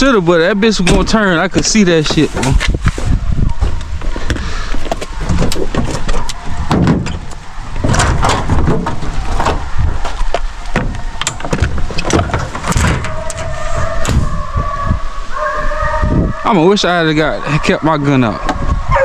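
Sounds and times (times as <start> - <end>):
vehicle low rumble: 0.0 - 17.5
knocks and rattles: 4.0 - 9.7, 10.7 - 14.3.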